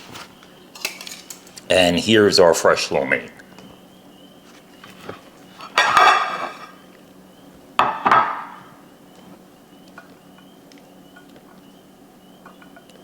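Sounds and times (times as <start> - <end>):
utensils clinking against dishware: 0.8 - 1.5, 5.6 - 6.8, 7.8 - 8.7.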